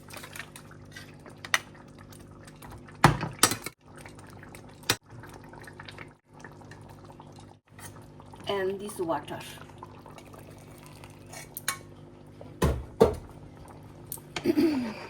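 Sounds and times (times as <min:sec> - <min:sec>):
curry bubbling: 0:00.0 - 0:11.6.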